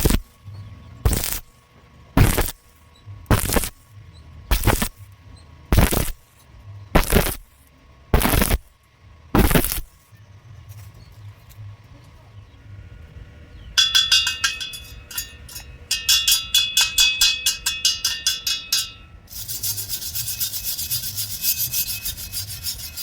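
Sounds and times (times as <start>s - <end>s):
chipping hammer striking steel: 0.0s - 0.3s, 1.1s - 1.5s, 2.2s - 2.7s, 3.3s - 3.8s, 4.5s - 5.0s, 5.7s - 6.2s, 7.0s - 7.5s, 8.2s - 8.7s, 9.4s - 10.0s, 13.8s - 19.1s
wire brush scrubbing metal: 0.0s - 0.3s, 1.1s - 1.5s, 2.2s - 2.7s, 3.3s - 3.8s, 4.5s - 5.0s, 5.7s - 7.5s, 8.2s - 8.7s, 9.4s - 10.1s, 13.8s - 23.0s.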